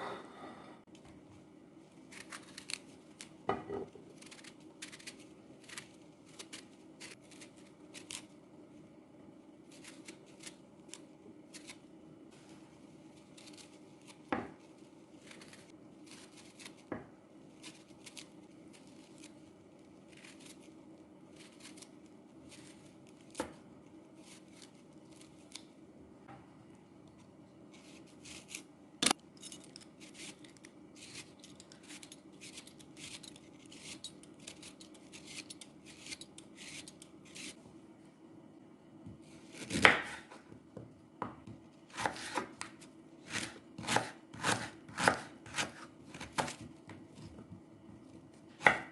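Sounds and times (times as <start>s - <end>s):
knife cutting on cutting board: 41.9s - 42.7s, 43.3s - 46.6s.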